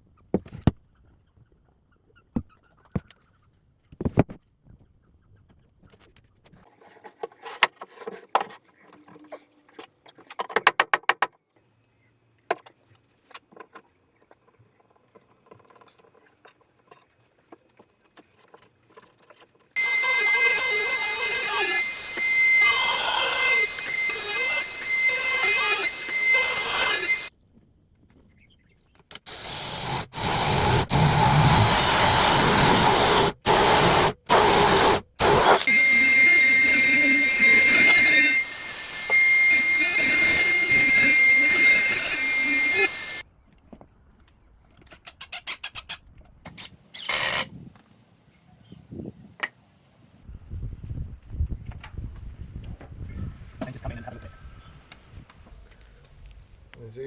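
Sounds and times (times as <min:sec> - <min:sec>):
power tool high whine: 0:19.8 - 0:27.3, 0:29.3 - 0:43.2.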